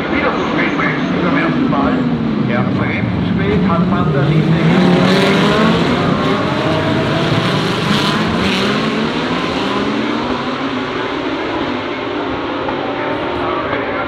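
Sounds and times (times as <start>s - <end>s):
race car engines accelerating: 0.0s - 14.0s.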